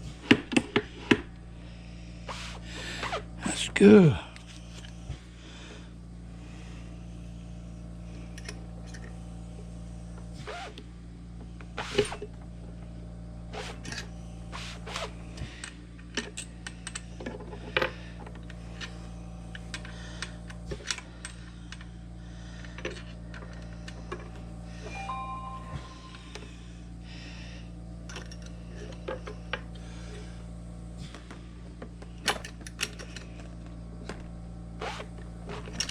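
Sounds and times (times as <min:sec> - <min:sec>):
low hum: 0:24.7 - 0:27.7.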